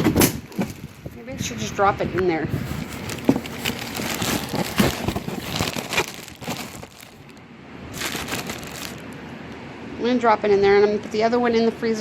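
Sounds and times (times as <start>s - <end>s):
plastic bag of ice crinkling: 0.5s - 1.1s, 2.5s - 9.2s.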